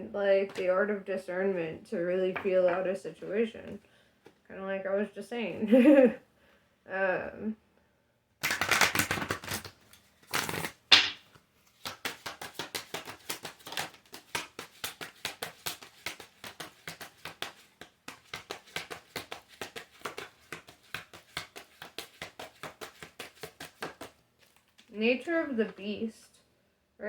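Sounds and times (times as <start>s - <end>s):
cards being shuffled: 8.4s - 24.9s.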